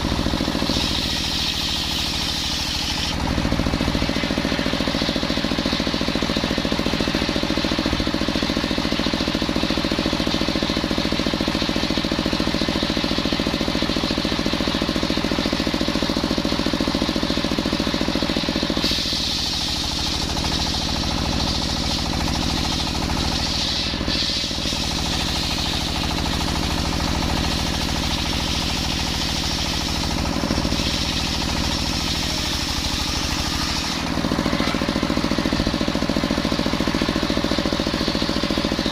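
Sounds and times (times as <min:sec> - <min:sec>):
saw blade rasping through wood: 0:00.0 - 0:04.4, 0:18.8 - 0:26.2, 0:27.0 - 0:35.7
sawmill engine running: 0:00.0 - 0:38.9.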